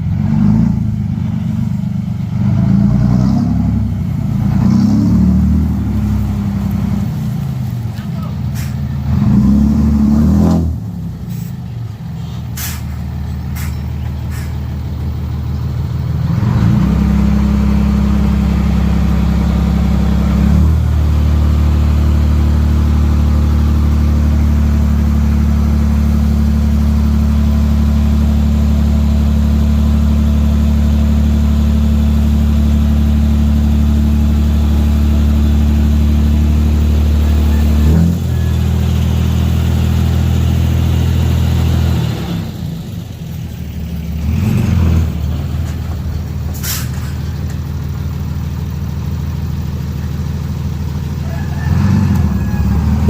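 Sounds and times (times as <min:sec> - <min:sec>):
heavy diesel engine revving: 0:00.0 - 0:53.0.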